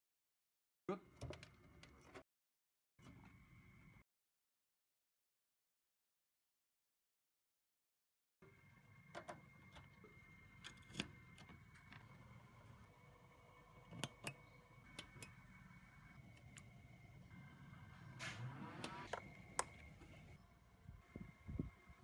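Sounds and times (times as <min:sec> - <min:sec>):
low steady hum: 0:08.4 - 0:22.0.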